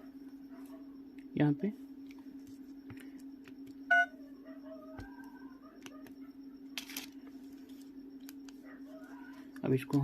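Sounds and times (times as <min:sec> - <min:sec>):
low electrical hum: 0:00.0 - 0:10.0
short electronic beep: 0:03.9 - 0:04.2.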